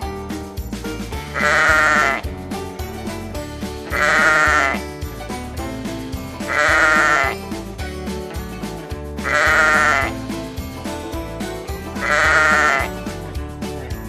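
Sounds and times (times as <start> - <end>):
background music: 0.0 - 14.0
sheep bleating: 1.3 - 2.3, 3.9 - 4.8, 6.4 - 7.4, 9.2 - 10.2, 12.0 - 13.0.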